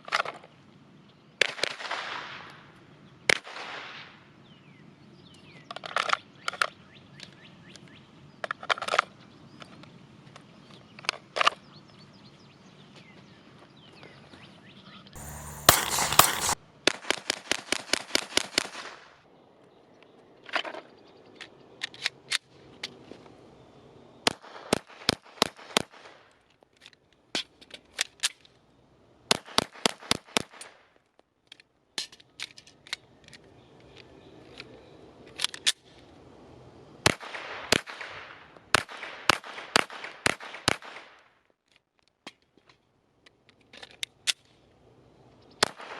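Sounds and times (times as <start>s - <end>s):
pistol shots: 15.2s - 16.6s.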